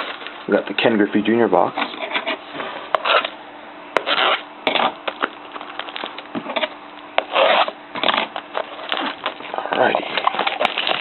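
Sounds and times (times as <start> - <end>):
cardboard box rustling: 8.0 - 11.0.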